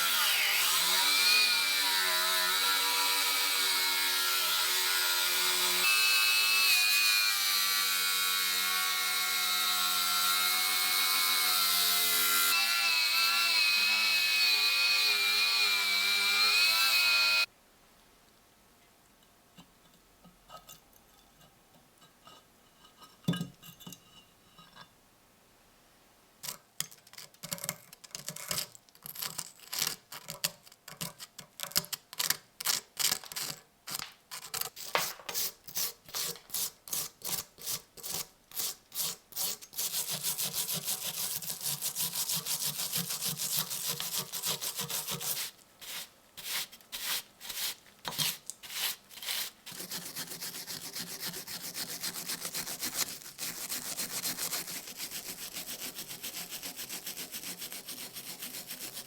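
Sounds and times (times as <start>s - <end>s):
hand tool scraping rusty metal: 34.3s - 59.0s.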